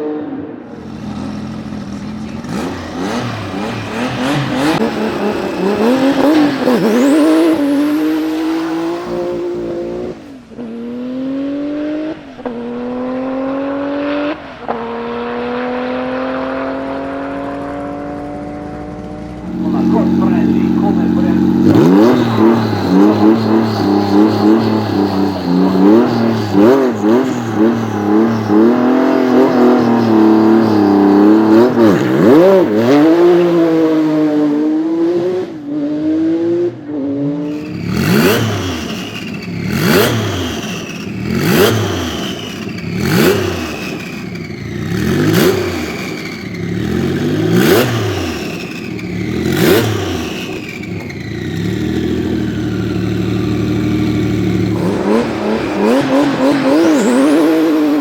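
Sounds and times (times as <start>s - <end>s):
car engine revving: 0.0s - 58.0s
turbo hiss and whistle: 22.0s - 29.3s.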